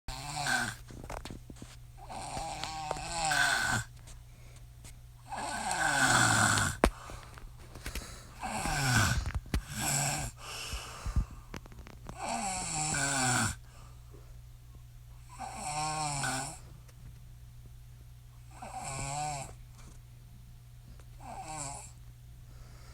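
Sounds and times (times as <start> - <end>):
woman snoring: 0.1 - 0.8, 2.0 - 3.9, 5.2 - 6.9, 8.4 - 10.7, 12.1 - 13.7, 15.3 - 16.6, 18.5 - 19.6, 21.2 - 22.0.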